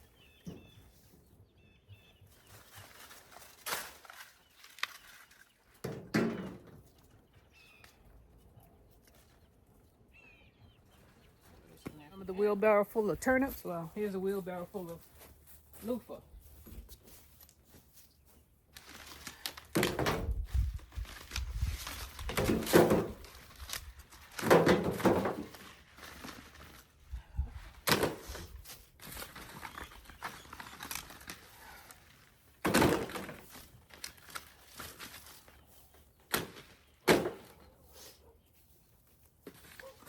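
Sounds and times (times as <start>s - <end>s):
rustling: 2.3s - 5.8s, 16.4s - 40.0s
gourds knocking into wheelbarrow: 5.8s - 6.8s, 22.3s - 23.2s, 24.4s - 25.6s.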